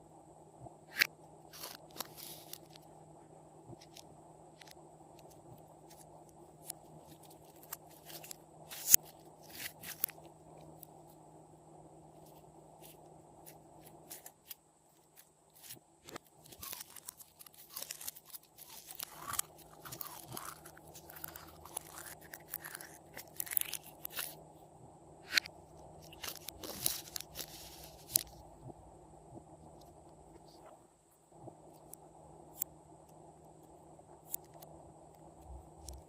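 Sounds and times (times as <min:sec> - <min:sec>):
slime clicking and crackling: 0:16.4 - 0:24.4.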